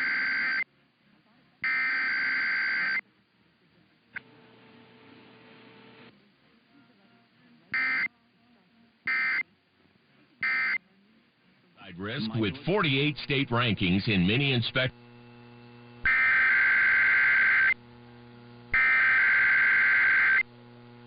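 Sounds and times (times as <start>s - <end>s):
faint hiss and hum: 0.0s - 21.0s
buzzy data-tone bursts: 12.3s - 21.0s.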